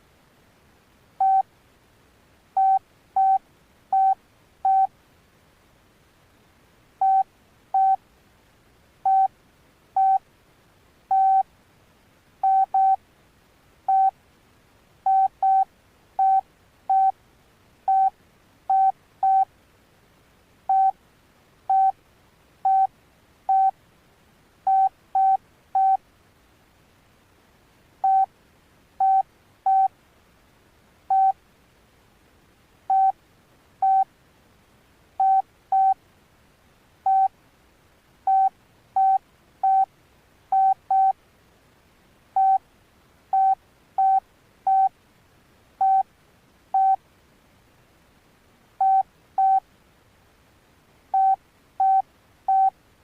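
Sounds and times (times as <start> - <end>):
phone keypad beeping: 1.2 - 1.4, 2.6 - 4.9, 7.0 - 7.2, 7.8 - 8.0, 9.1 - 9.3, 10.0 - 10.2, 11.1 - 11.4, 12.4 - 13.0, 13.9 - 14.1, 15.1 - 15.6, 16.2 - 17.1, 17.9 - 18.1, 18.7 - 19.5, 20.7 - 20.9, 21.7 - 21.9, 22.7 - 22.9, 23.5 - 23.7, 24.7 - 26.0, 28.0 - 28.3, 29.0 - 29.9, 31.1 - 31.3, 32.9 - 33.1, 33.8 - 34.0, 35.2 - 36.0, 37.1 - 37.3, 38.3 - 39.9, 40.6 - 41.1, 42.4 - 42.6, 43.4 - 44.9, 45.8 - 46.0, 46.8 - 47.0, 48.8 - 49.6, 51.2 - 52.7.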